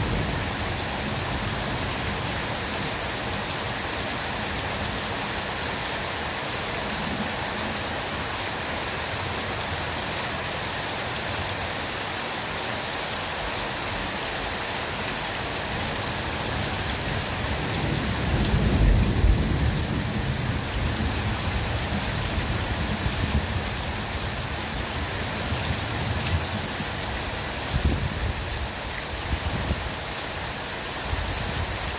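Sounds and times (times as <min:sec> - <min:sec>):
rain falling in a forest: 0:00.0 - 0:31.9
low rumble of thunder: 0:17.3 - 0:24.1.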